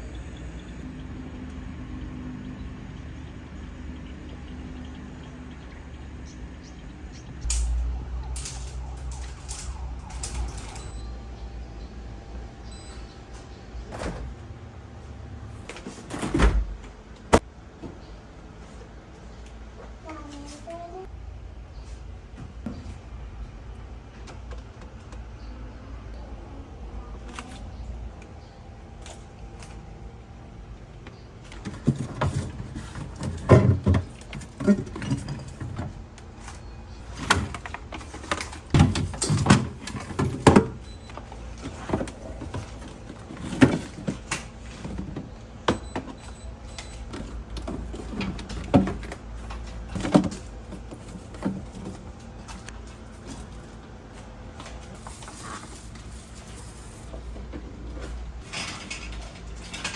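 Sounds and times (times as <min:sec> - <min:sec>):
fridge parts being handled: 0:31.4 - 0:59.9.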